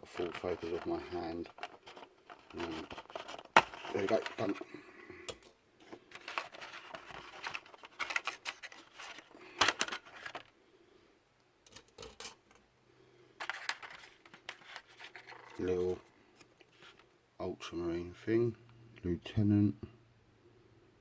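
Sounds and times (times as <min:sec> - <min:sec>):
plastic parts and paper rustling: 0:00.0 - 0:04.7, 0:05.3 - 0:10.6, 0:11.6 - 0:12.6, 0:13.4 - 0:17.1.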